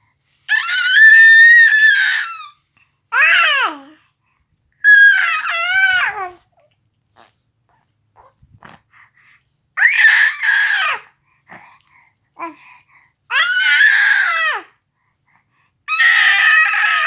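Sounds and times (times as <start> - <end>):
baby screaming: 0.5 - 2.6, 4.8 - 6.4, 9.8 - 11.1, 13.3 - 14.7, 15.9 - 17.0.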